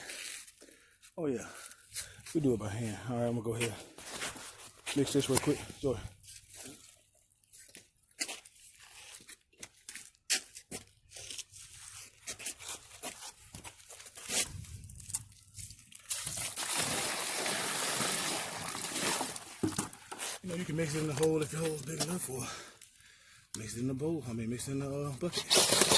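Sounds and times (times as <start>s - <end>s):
concrete scraping and crunching: 3.5s - 22.4s, 25.0s - 25.9s.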